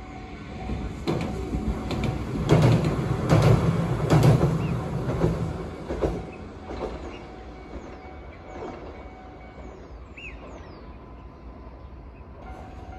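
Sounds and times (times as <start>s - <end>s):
low train rumble: 0.0s - 12.9s
train wheels clacking on rails: 0.6s - 10.7s.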